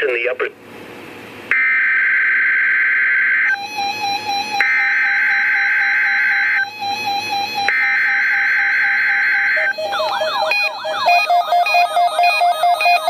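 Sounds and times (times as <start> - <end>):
warbling sweeping alert tones: 3.5 - 13.0
pulsed receiver beep: 3.6 - 13.0
screechy data-tone bursts: 3.6 - 13.0.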